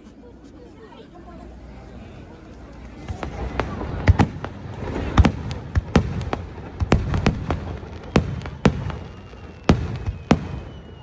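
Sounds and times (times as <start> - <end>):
continuous low rumble: 0.0 - 9.4
fireworks bursting with sharp bangs: 2.8 - 11.0.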